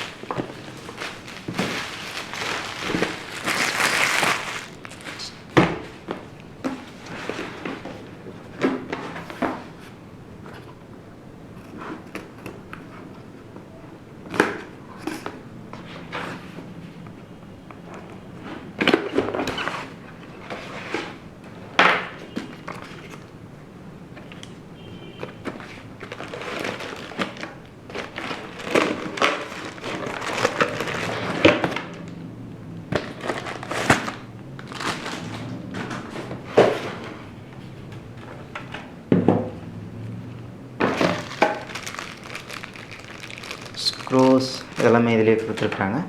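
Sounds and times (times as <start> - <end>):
cardboard box being handled: 0.0 - 5.5
plastic packing crinkling: 0.0 - 6.1, 25.2 - 32.2, 32.9 - 37.4, 40.8 - 45.8.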